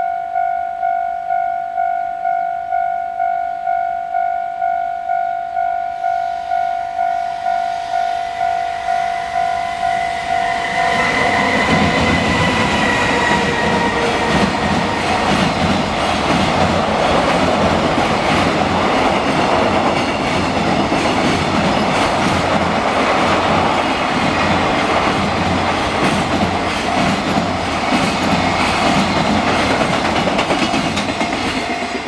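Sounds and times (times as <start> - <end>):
train wheels rumbling on rails: 6.9 - 32.0.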